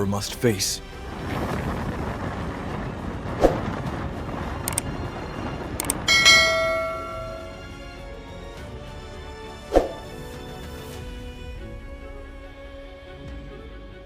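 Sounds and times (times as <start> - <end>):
steady rushing noise: 0.1 - 7.7
sharp clicks: 4.6 - 4.9, 5.8 - 6.1
loud bell-like ringing strike: 6.1 - 7.8.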